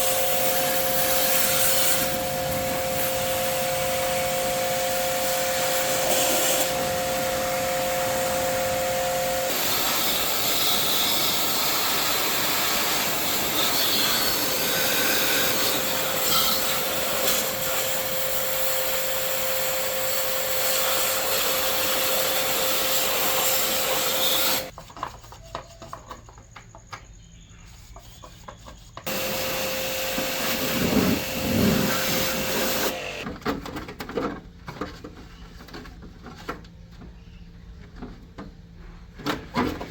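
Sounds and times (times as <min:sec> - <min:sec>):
small electric motor whining: 0:00.0 - 0:24.7, 0:29.1 - 0:33.2.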